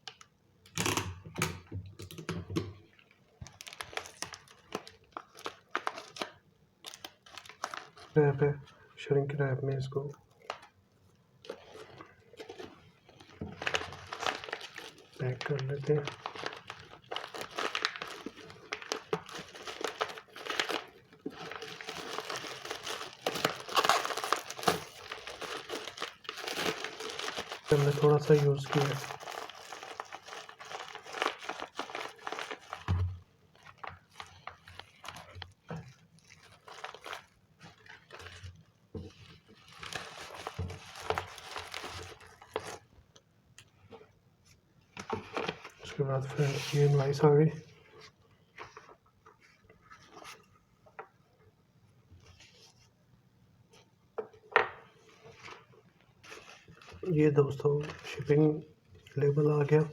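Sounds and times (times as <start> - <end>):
plastic film crinkling: 2.8 - 8.8, 11.4 - 43.8, 54.9 - 59.9.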